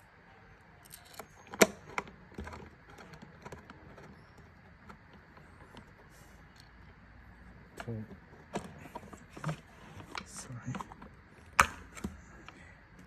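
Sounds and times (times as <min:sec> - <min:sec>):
lock parts clicking and knocking: 0:00.8 - 0:06.0.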